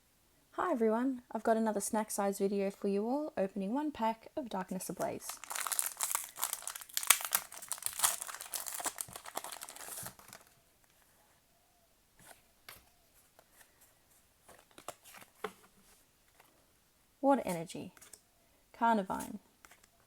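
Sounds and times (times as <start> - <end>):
foil wrapper crinkling and tearing: 5.0 - 10.5.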